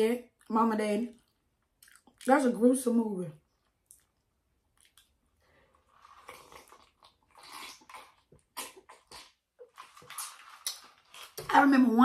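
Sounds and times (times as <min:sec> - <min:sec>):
chewing with mouth smacks: 0:01.1 - 0:02.3, 0:03.5 - 0:05.2, 0:05.8 - 0:11.5.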